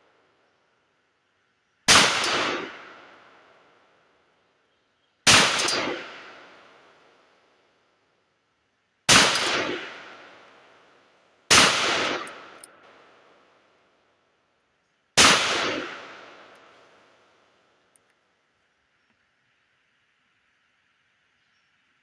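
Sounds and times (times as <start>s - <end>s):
pistol shots with echo: 1.9s - 3.5s, 5.3s - 6.9s, 9.1s - 10.9s, 11.5s - 13.3s, 15.2s - 17.0s.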